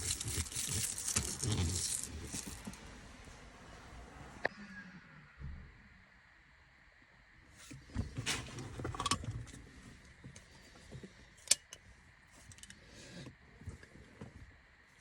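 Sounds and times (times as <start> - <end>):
small hard objects rattling: 0.0 - 2.8.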